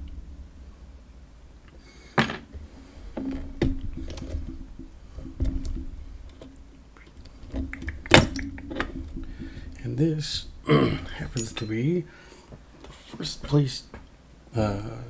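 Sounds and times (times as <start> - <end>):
lock picking tools rattling: 5.5 - 10.4, 11.0 - 12.0
padlock metallic clicks: 7.0 - 8.9.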